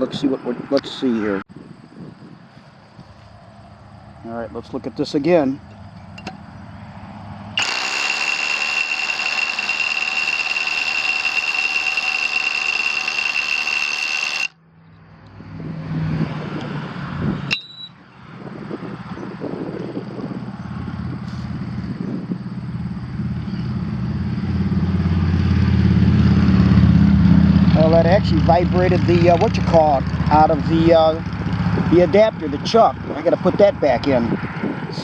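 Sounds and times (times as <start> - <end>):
rotary hammer drilling into concrete: 7.6 - 14.6.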